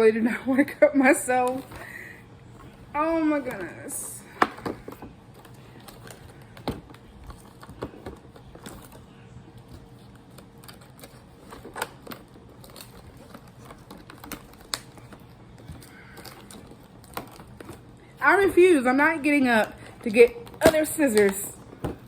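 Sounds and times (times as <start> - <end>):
scissors cutting packaging: 9.8 - 18.7.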